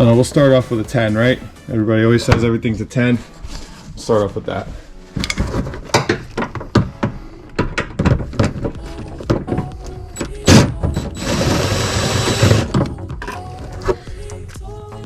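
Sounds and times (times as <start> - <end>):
power tool running: 11.0 - 12.7.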